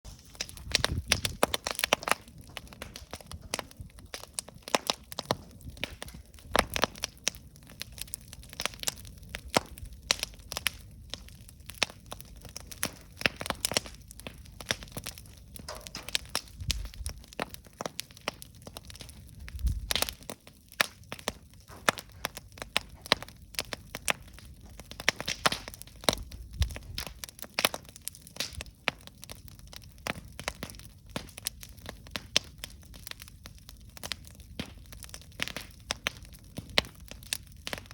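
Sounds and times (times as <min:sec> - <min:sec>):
campfire crackling and popping: 0:00.1 - 0:37.9
flames hissing and rumbling: 0:00.1 - 0:37.9.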